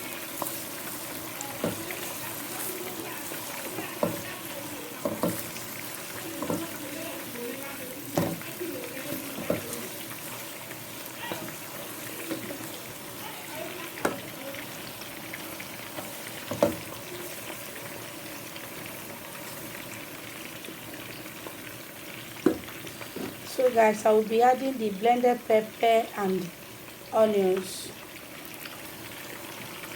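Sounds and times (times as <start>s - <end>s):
food sizzling in a pot: 0.0s - 29.9s
spoon knocking against pot: 5.0s - 5.4s, 8.2s - 8.5s.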